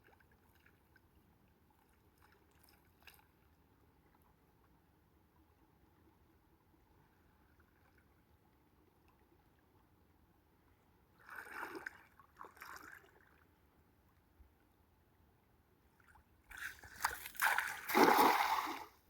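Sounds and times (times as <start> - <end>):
water splashing and sloshing: 0.0 - 4.4, 11.0 - 14.2, 16.0 - 19.0.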